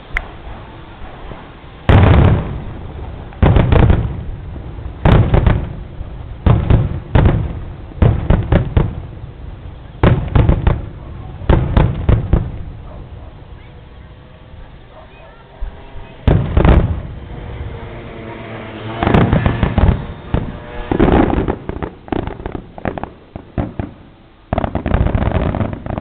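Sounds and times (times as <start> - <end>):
fireworks booming: 0.0 - 26.0.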